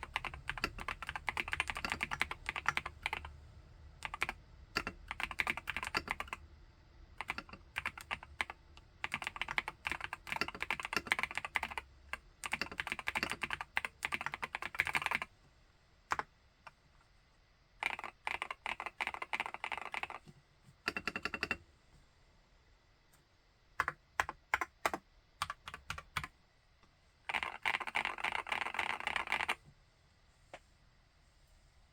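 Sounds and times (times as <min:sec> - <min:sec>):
mechanical keyboard typing: 0:00.0 - 0:03.4, 0:04.0 - 0:06.4, 0:07.2 - 0:15.3, 0:17.8 - 0:21.6, 0:23.8 - 0:26.3, 0:27.3 - 0:29.6.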